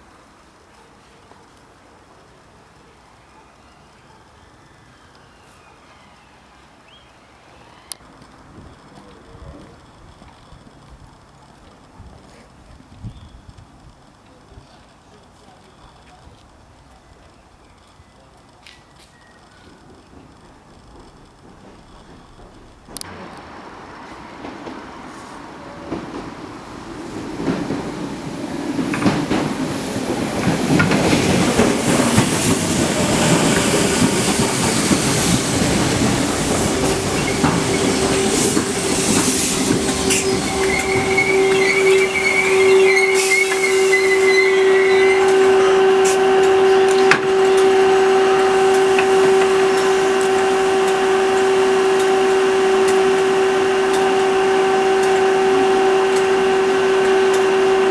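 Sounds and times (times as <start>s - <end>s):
electric train arriving: 0.0s - 57.9s
steady train hum: 6.4s - 57.9s
wavering high squeal: 30.8s - 57.9s.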